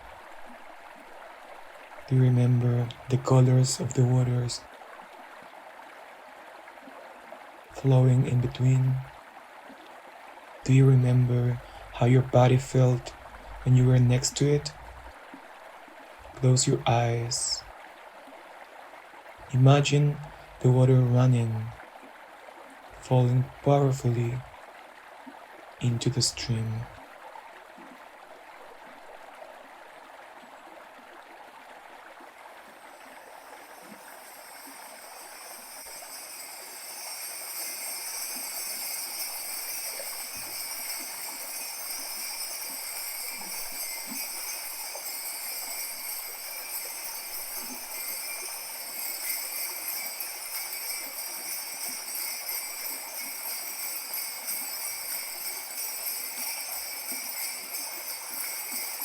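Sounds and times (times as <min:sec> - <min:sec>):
bronze bells jingling: 0:02.1 - 0:04.7, 0:07.7 - 0:09.1, 0:10.6 - 0:15.1, 0:16.2 - 0:17.7, 0:19.4 - 0:21.8, 0:32.6 - 0:59.0.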